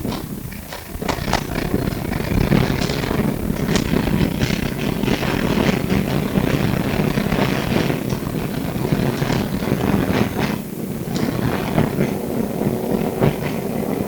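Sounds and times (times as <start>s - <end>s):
clicks and rattles: 0.0s - 7.2s
tram wheels rumbling on rail: 0.0s - 14.0s.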